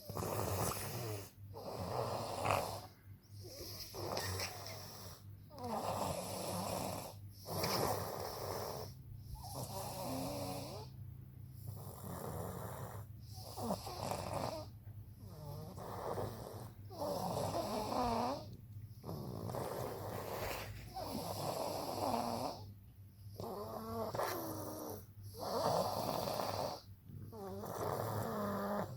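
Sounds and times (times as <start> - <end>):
person snoring: 23.4 - 28.9.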